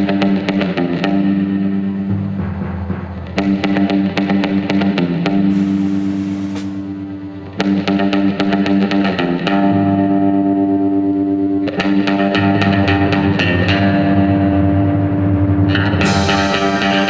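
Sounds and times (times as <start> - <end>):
distorted electric guitar: 15.6 - 17.0.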